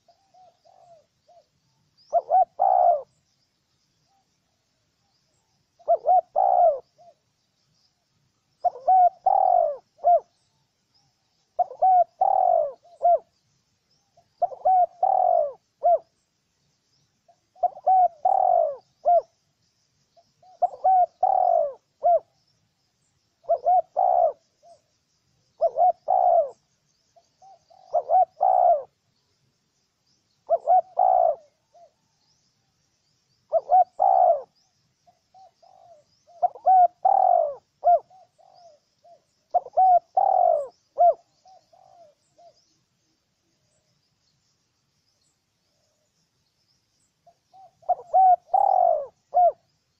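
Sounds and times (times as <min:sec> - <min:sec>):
dove cooing: 0:00.0 - 0:01.5, 0:02.1 - 0:03.2, 0:05.8 - 0:07.2, 0:08.6 - 0:10.4, 0:11.6 - 0:13.3, 0:14.4 - 0:16.2, 0:17.5 - 0:19.4, 0:20.4 - 0:22.3, 0:23.4 - 0:24.9, 0:25.5 - 0:26.6, 0:27.4 - 0:29.0, 0:30.4 - 0:32.1, 0:33.5 - 0:42.7, 0:47.2 - 0:49.7
small birds chirping: 0:00.0 - 0:49.9.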